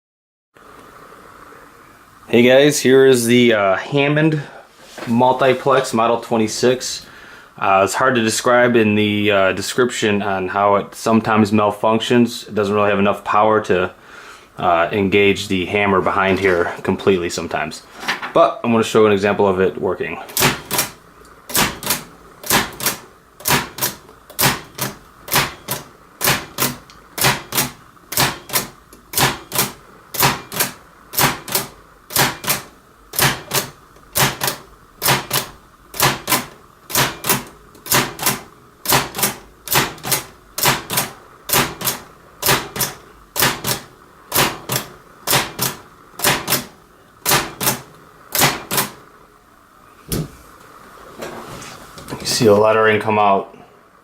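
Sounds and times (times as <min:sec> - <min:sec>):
typewriter keystrokes clacking: 0:20.4 - 0:49.0.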